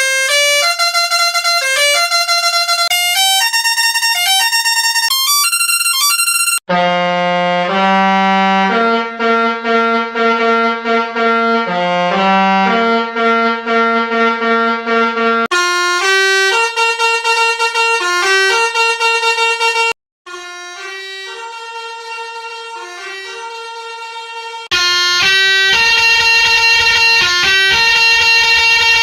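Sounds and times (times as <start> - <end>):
musical vehicle horn tune: 0.0 - 29.0
bright high horn notes: 14.9 - 29.0.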